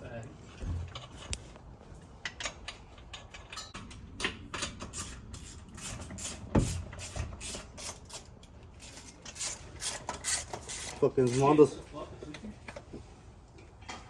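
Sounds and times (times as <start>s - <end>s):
tools and metal parts clicking: 2.2s - 5.2s, 6.9s - 11.6s.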